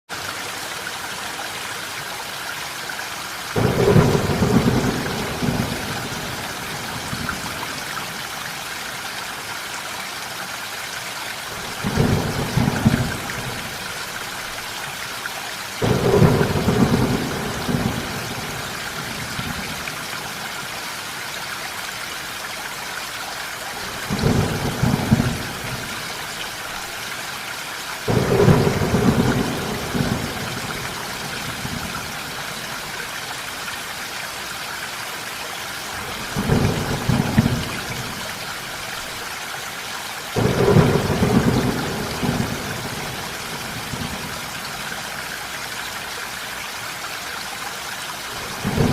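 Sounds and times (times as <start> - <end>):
steady rain: 0.1 - 48.9
thunder rumbling: 3.6 - 7.8, 11.6 - 14.0, 15.8 - 19.8, 24.0 - 26.0, 28.1 - 32.2, 36.1 - 38.2, 40.4 - 44.6, 48.5 - 48.9.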